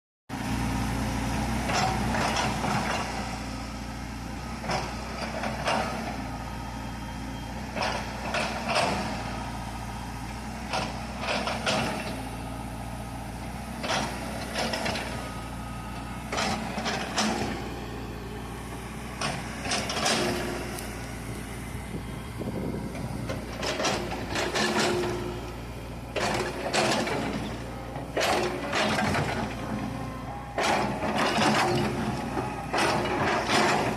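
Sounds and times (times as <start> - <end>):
excavator diesel engine running: 0.3 - 33.9
metal clanks and scrapes: 30.6 - 33.9.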